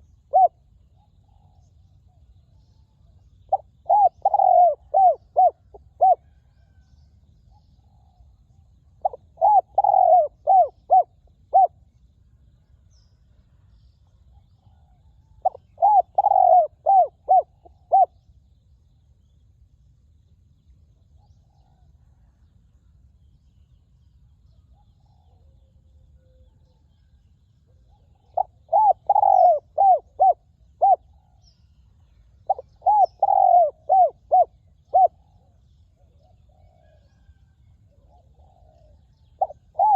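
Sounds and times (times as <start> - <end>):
dove cooing: 0.0 - 1.6, 3.5 - 6.8, 9.0 - 11.8, 15.0 - 18.1, 27.7 - 31.1, 32.4 - 39.9.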